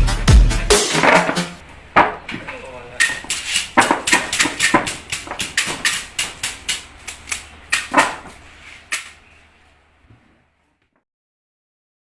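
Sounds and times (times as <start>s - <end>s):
sharp clacks of bamboo: 0.9s - 9.2s.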